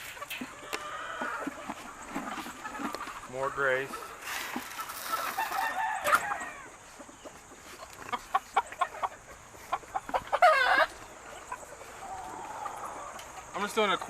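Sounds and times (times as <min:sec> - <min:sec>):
chickens clucking: 0:00.0 - 0:14.0
rooster crowing: 0:05.2 - 0:06.7.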